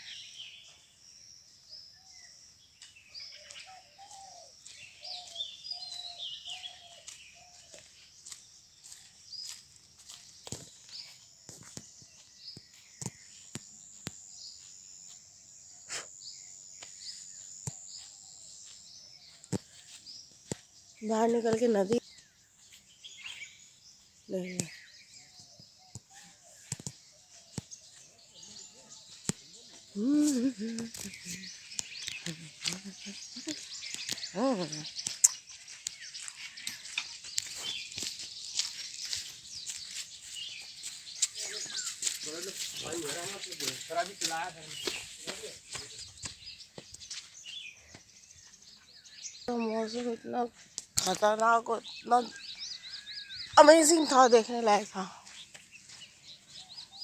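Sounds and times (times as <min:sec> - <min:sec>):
birds chirping and calling: 0:01.6 - 0:57.0
short bird chirps: 0:15.8 - 0:17.3.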